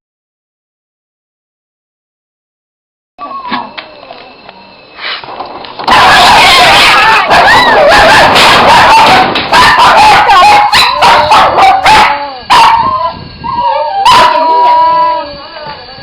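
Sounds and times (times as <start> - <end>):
cats yowling and screeching: 5.8 - 16.0.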